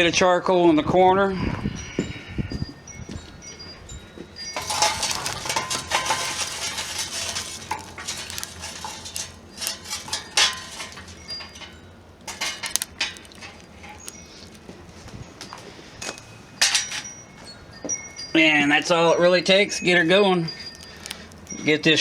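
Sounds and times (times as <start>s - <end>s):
charcoal lumps clattering: 4.4s - 17.2s, 18.3s - 22.0s.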